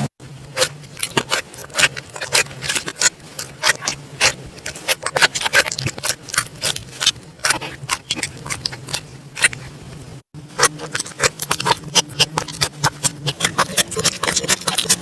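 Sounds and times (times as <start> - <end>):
slime crackling and popping: 10.6 - 15.0.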